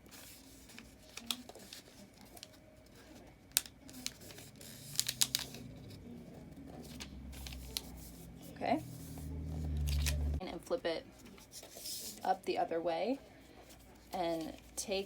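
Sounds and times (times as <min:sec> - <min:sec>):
paper crinkling and folding: 0:00.0 - 0:08.2.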